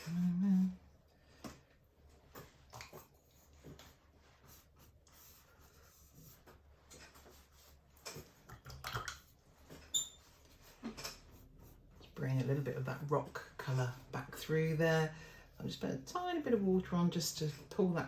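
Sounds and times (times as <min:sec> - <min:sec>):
paintbrush scratching on canvas: 0:02.8 - 0:08.4, 0:09.5 - 0:14.6.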